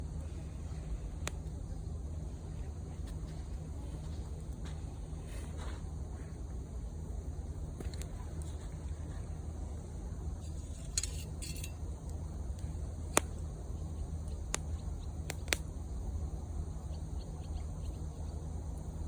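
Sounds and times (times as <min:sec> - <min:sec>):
fire crackling pops: 0:00.9 - 0:02.2, 0:10.3 - 0:19.0.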